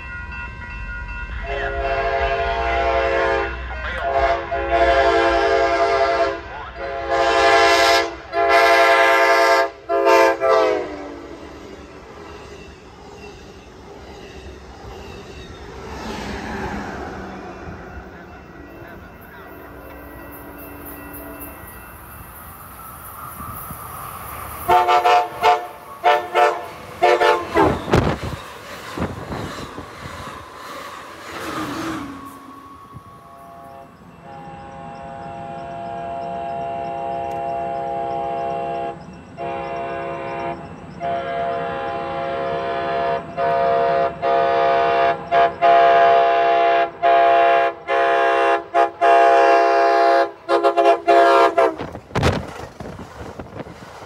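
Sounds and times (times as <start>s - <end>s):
train passing: 0.0s - 54.0s
train air horn blasts: 1.4s - 11.4s, 24.6s - 28.2s, 31.4s - 52.0s.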